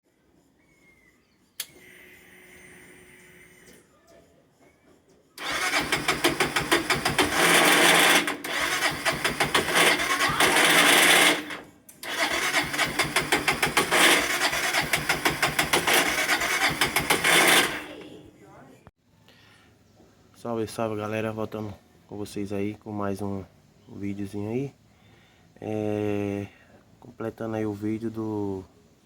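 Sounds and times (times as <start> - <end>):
engine cranking on electric starter: 5.4 - 18.1.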